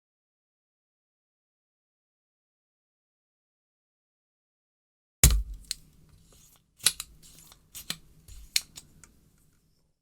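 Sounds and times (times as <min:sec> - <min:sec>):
solder sucker snapping: 0:05.2 - 0:05.8, 0:06.8 - 0:08.9.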